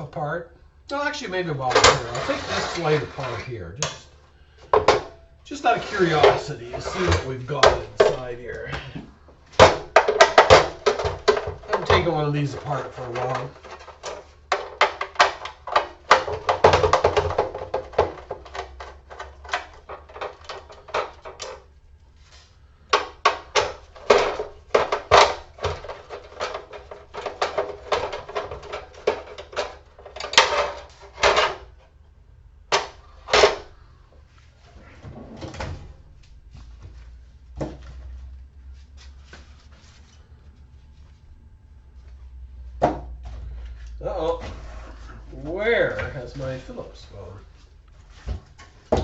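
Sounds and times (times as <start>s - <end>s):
metal parts and tools clattering: 1.7s - 3.6s, 4.6s - 8.7s, 9.6s - 21.7s, 22.9s - 32.0s.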